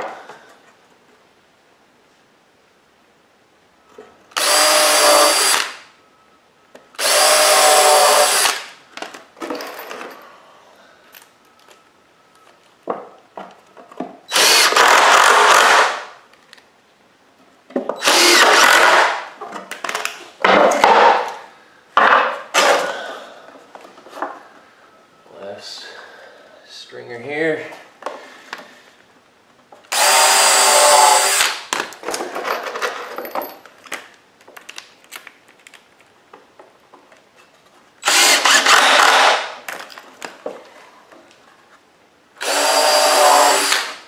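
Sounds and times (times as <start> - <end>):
power drill driving screws: 4.4 - 5.8, 7.0 - 8.7, 14.3 - 16.1, 18.0 - 19.2, 29.9 - 31.6, 38.0 - 39.6, 42.4 - 44.0
wood knocks and handling: 22.0 - 22.8.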